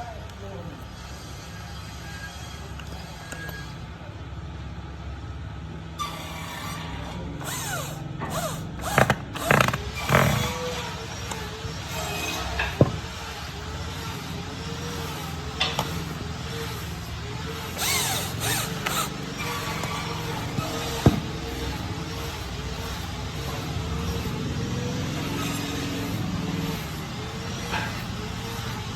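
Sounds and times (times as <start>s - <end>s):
creaking wooden scrape: 6.0s - 28.9s
wood knocking on wood: 12.6s - 13.1s, 20.4s - 21.7s.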